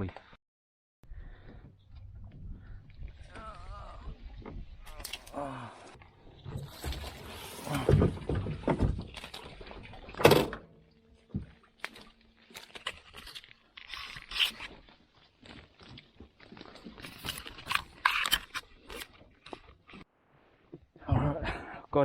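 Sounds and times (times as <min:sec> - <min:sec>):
branches rustling and scraping: 0:11.7 - 0:20.0.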